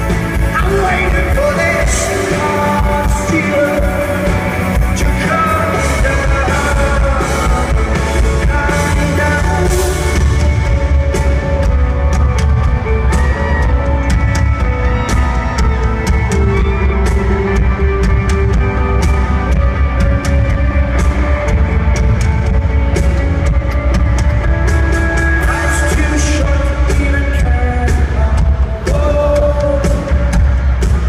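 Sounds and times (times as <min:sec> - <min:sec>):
person singing: 0:00.0 - 0:11.9, 0:24.4 - 0:31.0
drums: 0:00.0 - 0:31.0
guitars: 0:00.0 - 0:31.0
heavy bass: 0:00.0 - 0:31.0.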